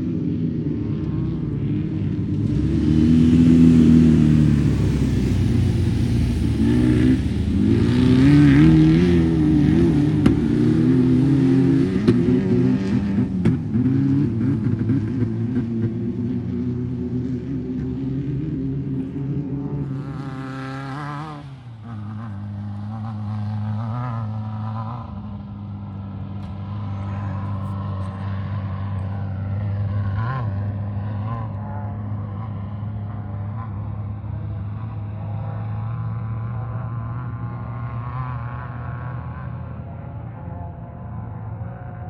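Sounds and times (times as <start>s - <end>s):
off-road vehicle engines revving: 0.0s - 42.0s
vehicle passing close: 1.9s - 31.6s.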